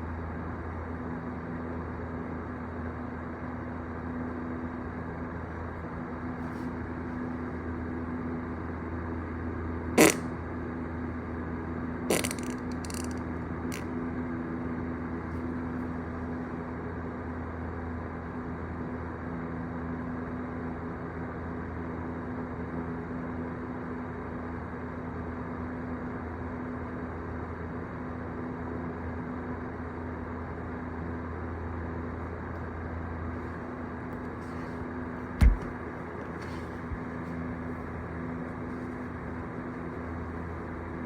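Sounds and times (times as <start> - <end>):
low mechanical hum: 0.0 - 41.0
loud thump: 35.4 - 35.8.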